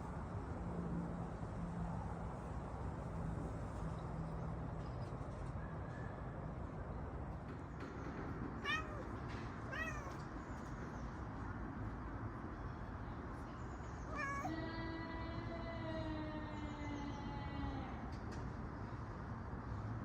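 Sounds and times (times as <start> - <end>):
cat meowing: 8.6 - 10.3, 14.1 - 14.7.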